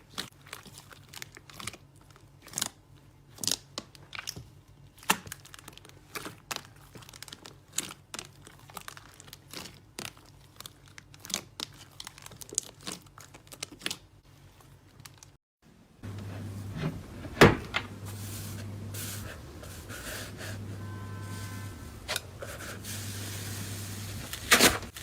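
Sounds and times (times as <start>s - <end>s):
faint low hum: 15.8s - 24.4s.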